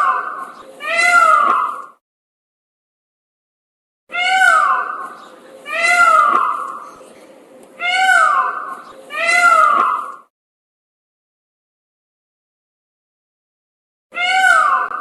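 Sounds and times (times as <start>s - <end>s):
meow-like calls: 4.1s - 5.1s, 5.7s - 6.8s, 7.8s - 10.2s, 14.1s - 15.0s.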